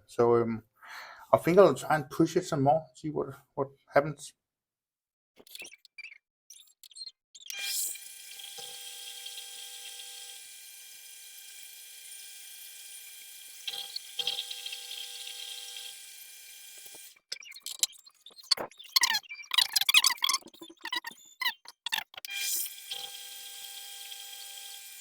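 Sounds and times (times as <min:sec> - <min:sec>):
tool cutting aluminium: 0:06.6 - 0:25.0
metal lathe motor whine: 0:22.3 - 0:25.0.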